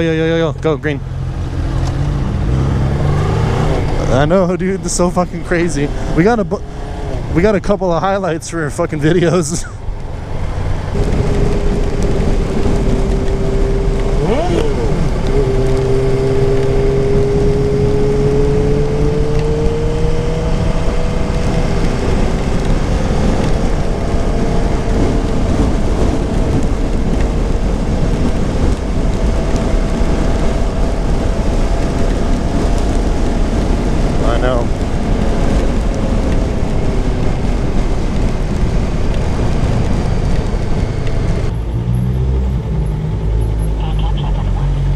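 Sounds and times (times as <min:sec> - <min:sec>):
motorcycle engine rev: 0:00.9 - 0:07.7, 0:10.5 - 0:44.9
motorcycle engine running: 0:10.0 - 0:41.5.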